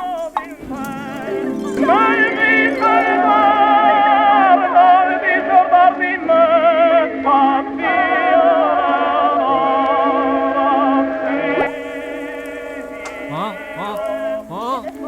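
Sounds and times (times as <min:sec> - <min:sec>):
sustained accompaniment: 0:00.0 - 0:05.6, 0:11.7 - 0:15.0
high operatic voice with vibrato: 0:13.3 - 0:15.0.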